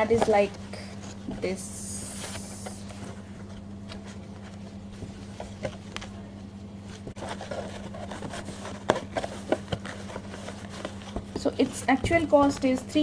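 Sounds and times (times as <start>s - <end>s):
low electrical hum: 0.0s - 13.0s
soft taps and rustles: 6.8s - 13.0s.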